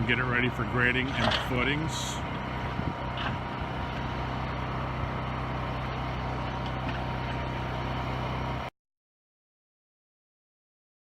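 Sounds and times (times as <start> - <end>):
heavy vehicle engine humming: 0.0 - 8.7.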